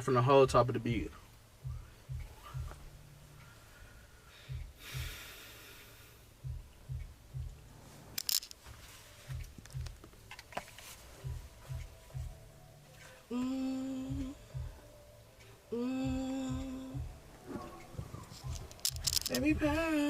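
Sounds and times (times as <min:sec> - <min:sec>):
faint hip-hop beat from speakers: 0:00.0 - 0:20.0
deep kick hits: 0:00.5 - 0:03.0, 0:06.4 - 0:07.7.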